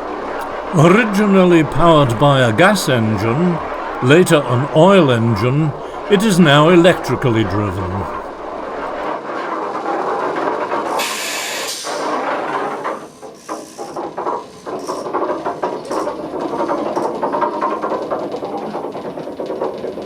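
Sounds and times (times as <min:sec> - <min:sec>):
rattling clatter of tramcar wheels: 0:13.3 - 0:20.0.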